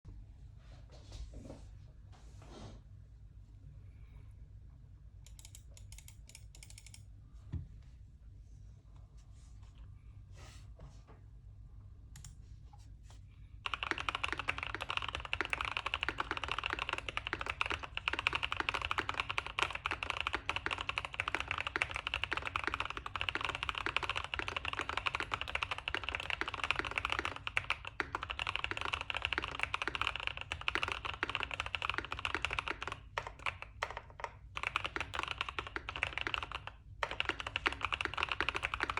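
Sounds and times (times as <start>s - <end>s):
mechanical keyboard typing: 5.2s - 7.0s, 13.6s - 38.9s.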